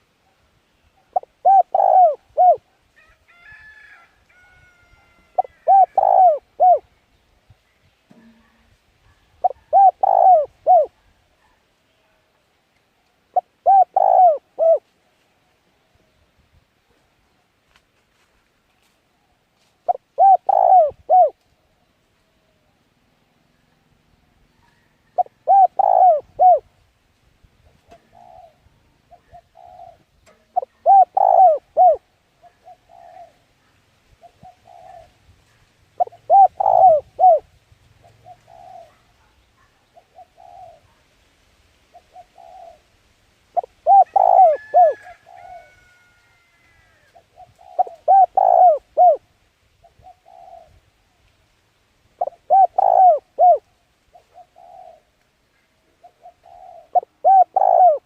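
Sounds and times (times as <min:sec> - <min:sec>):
dove cooing: 0:01.0 - 0:02.8, 0:04.9 - 0:06.9, 0:08.2 - 0:11.6, 0:13.3 - 0:14.9, 0:19.8 - 0:21.4, 0:24.5 - 0:26.7, 0:27.8 - 0:33.5, 0:34.2 - 0:41.0, 0:41.9 - 0:50.9, 0:52.2 - 0:55.2, 0:55.8 - 0:58.0.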